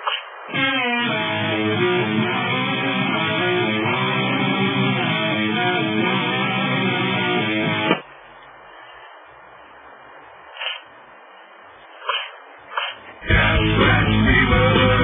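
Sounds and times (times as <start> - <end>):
strummed guitar music: 0.5 - 8.0, 13.2 - 15.0.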